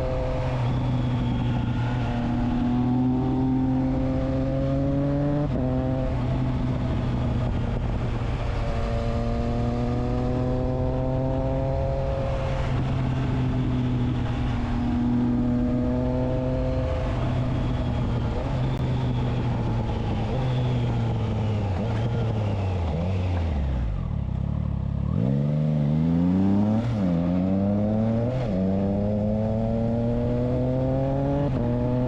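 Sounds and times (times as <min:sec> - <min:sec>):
motorcycle engine revving: 0:00.0 - 0:32.0.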